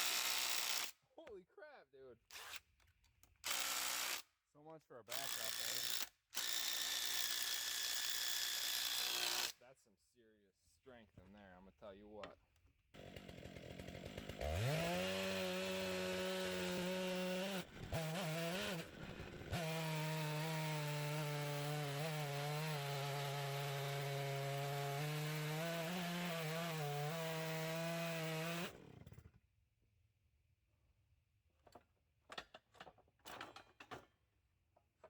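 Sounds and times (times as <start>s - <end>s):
chainsaw ripping log: 13.0s - 29.2s.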